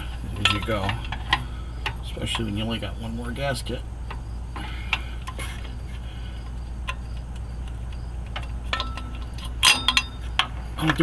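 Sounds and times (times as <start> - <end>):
steady low hum: 0.0 - 11.0
wrench clicking on bolts: 7.6 - 11.0.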